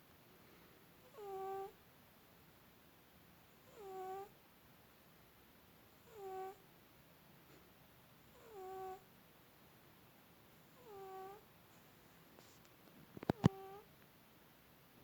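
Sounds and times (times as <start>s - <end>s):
cat snoring: 1.0s - 1.8s, 3.6s - 4.4s, 6.0s - 6.6s, 8.3s - 9.1s, 10.7s - 11.4s, 13.3s - 13.9s.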